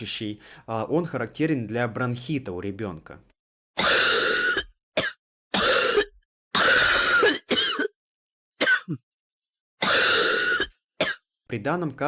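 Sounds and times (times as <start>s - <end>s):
child coughing harshly: 3.8s - 8.0s, 8.6s - 9.0s, 9.8s - 11.3s.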